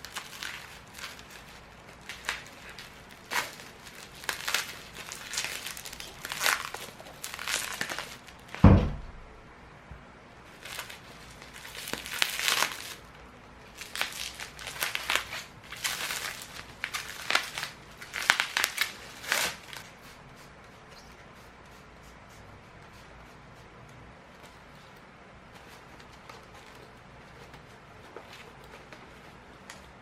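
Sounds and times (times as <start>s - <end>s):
plastic packaging crinkling: 0.0s - 8.6s, 10.5s - 20.0s
heavy thump: 8.6s - 9.5s.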